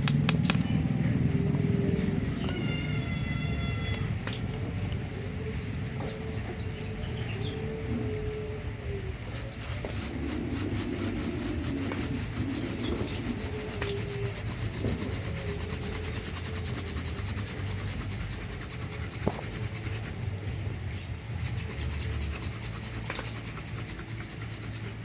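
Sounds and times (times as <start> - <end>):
wood-on-wood rubbing of hand drill: 9.1 - 25.0.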